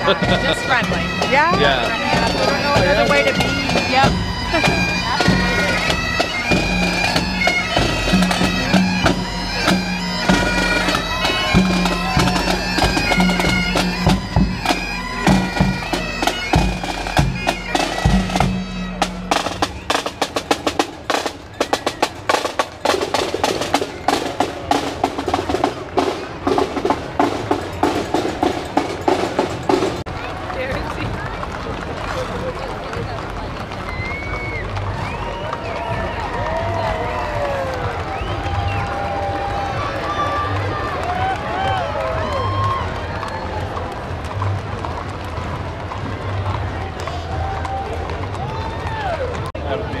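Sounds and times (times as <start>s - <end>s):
bagpipes playing: 0.0s - 23.0s
drums: 0.0s - 50.0s.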